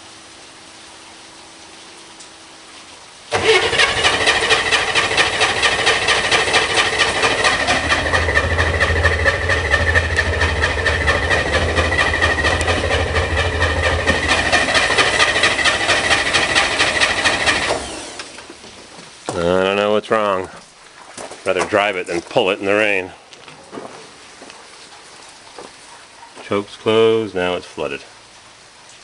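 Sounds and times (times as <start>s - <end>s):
engine cranked by starter: 3.3s - 18.6s.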